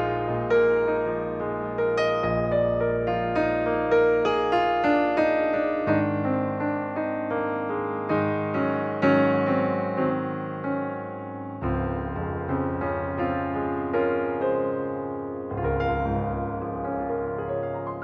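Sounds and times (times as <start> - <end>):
piano sustained notes: 11.6 - 18.0
soft bass: 15.5 - 17.8.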